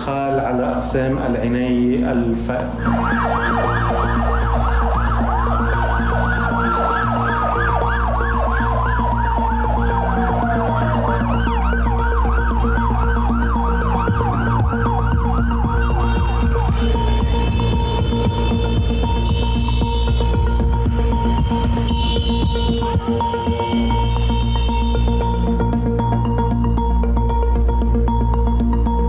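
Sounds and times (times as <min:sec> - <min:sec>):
rapid sweeping siren: 0:02.6 - 0:28.1
long falling siren tone: 0:02.7 - 0:26.0.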